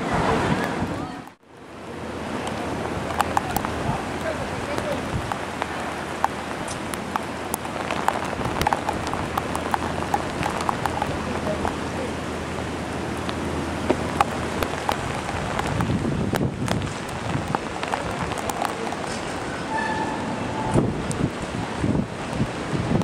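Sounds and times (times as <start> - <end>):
heavy rain on hard surfaces: 0.0 - 23.0.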